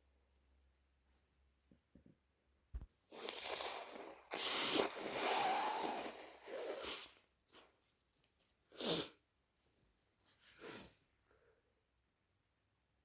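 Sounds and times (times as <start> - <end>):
person blowing their nose: 3.1 - 7.2, 8.7 - 9.2.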